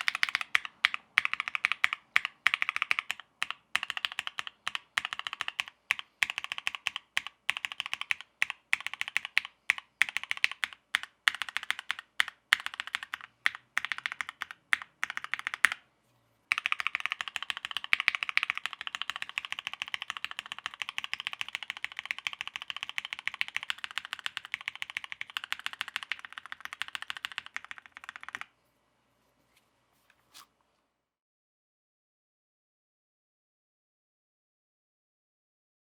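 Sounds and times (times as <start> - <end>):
mechanical keyboard typing: 0.0 - 15.8, 16.5 - 28.5.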